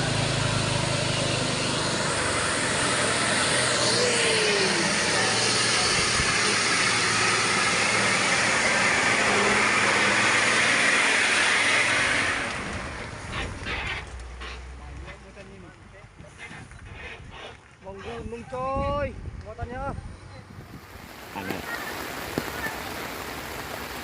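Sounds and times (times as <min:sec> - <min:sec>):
heavy truck driving past: 0:00.0 - 0:15.4.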